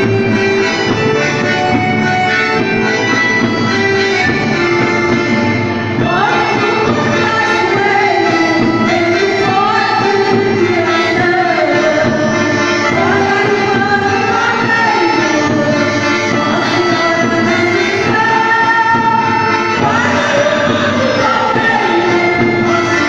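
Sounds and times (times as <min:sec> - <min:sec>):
song with sung melody: 0:00.0 - 0:23.0.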